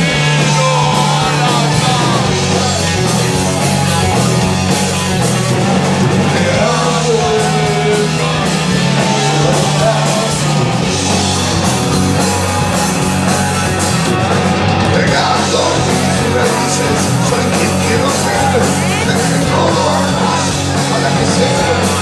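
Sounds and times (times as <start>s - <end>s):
person singing or shouting: 0.0s - 4.7s, 6.2s - 10.7s
distorted guitars: 0.0s - 22.0s
drums: 0.0s - 22.0s
live rock music: 0.0s - 22.0s.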